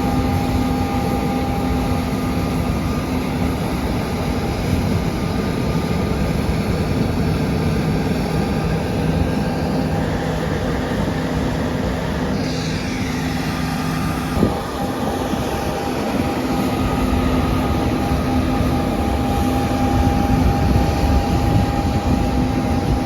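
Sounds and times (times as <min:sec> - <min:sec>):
steady whine: 0:00.0 - 0:23.0
heavy machinery engine running: 0:07.6 - 0:23.0.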